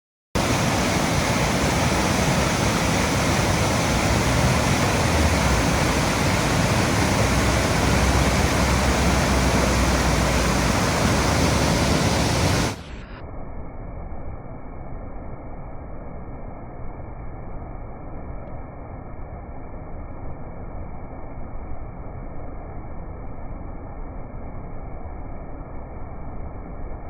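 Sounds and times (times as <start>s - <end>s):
waterfall rushing into pool: 0.4s - 13.0s.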